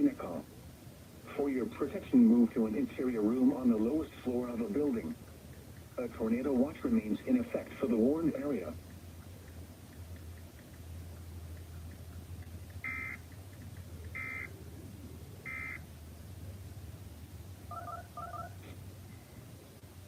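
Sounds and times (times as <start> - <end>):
steady low hum: 0.0 - 20.0
digital data tone bursts: 12.8 - 13.2, 14.2 - 14.5, 15.5 - 15.8
double beeps: 12.9 - 13.2, 14.2 - 14.5, 15.5 - 15.8.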